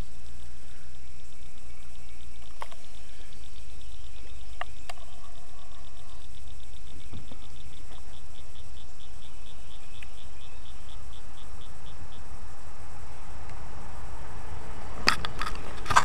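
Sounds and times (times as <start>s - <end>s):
high-pitched rhythmic chirping: 0.0s - 12.6s
steady low rumble: 0.0s - 16.0s.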